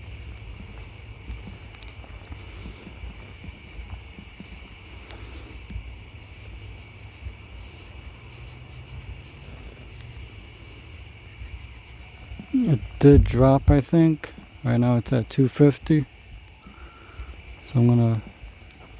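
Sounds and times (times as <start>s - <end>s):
crickets trilling: 0.0s - 18.9s
pulsing insect chirp: 0.0s - 18.9s.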